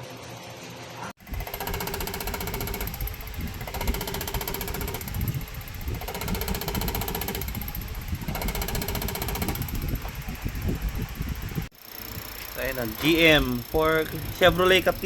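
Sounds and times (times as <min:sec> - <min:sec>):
diesel injector clicking rapidly: 0:01.2 - 0:15.0
tester motor running: 0:01.2 - 0:15.0.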